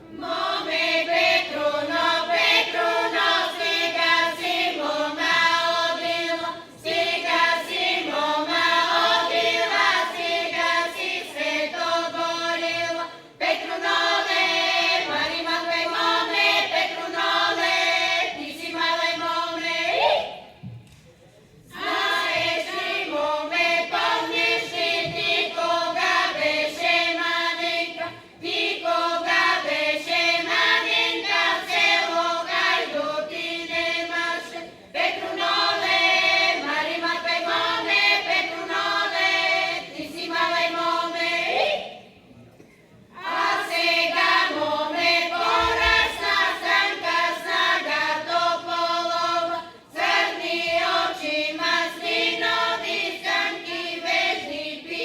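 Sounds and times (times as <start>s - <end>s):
choir singing: 0.0s - 20.5s, 21.7s - 42.1s, 43.1s - 55.0s.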